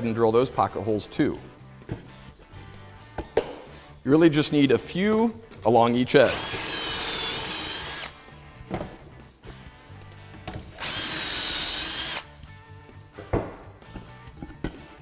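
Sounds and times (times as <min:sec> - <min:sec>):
drill whining through plywood: 0:06.3 - 0:08.2, 0:10.8 - 0:12.3.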